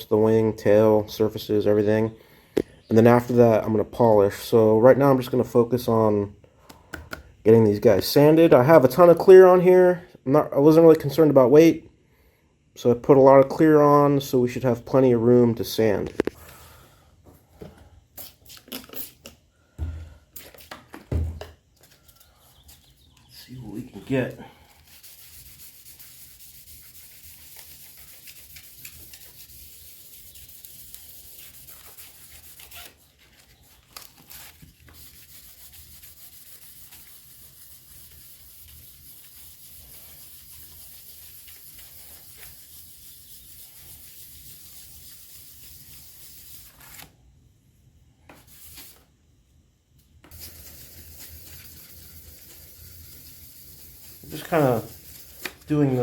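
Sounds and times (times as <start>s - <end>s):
sandpaper rubbing hiss: 24.6s - 47.0s, 48.4s - 49.0s, 50.3s - 56.0s.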